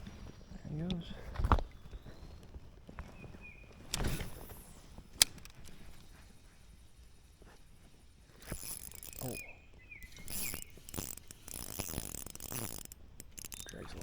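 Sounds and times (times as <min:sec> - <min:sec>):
sharp reel click: 0:03.8 - 0:06.1, 0:08.3 - 0:14.0.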